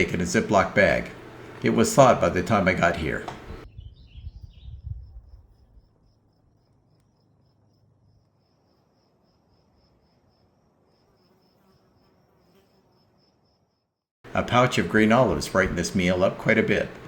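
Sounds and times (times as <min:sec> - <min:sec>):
cricket chirping: 0:04.8 - 0:14.0.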